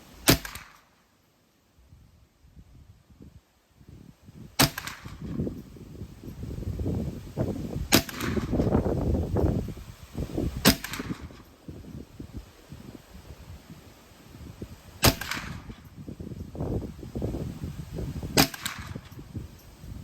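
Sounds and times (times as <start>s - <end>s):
rifle shots: 0.2s - 0.9s, 4.6s - 5.4s, 7.9s - 8.7s, 10.6s - 11.4s, 15.0s - 15.8s, 18.4s - 19.1s
wind buffeting microphone: 1.8s - 20.0s.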